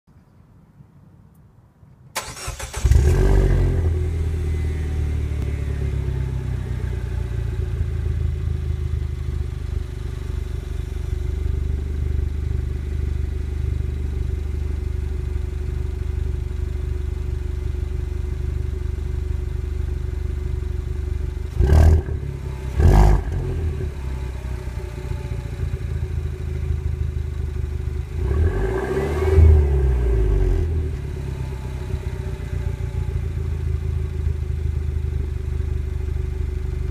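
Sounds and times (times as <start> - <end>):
car engine starting and idling: 2.1 - 36.9
engine revving: 2.2 - 5.6, 21.5 - 24.4, 28.1 - 32.2.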